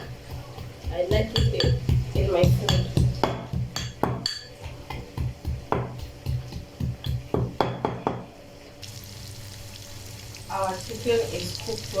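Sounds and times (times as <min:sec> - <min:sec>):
knocking of garlic being crushed: 0:00.0 - 0:08.3
chicken sizzling in oil: 0:08.5 - 0:12.0.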